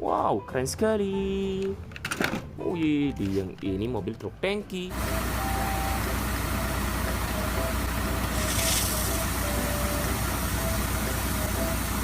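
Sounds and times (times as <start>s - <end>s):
truck engine idling: 4.9s - 12.0s
air hissing burst: 8.3s - 9.4s.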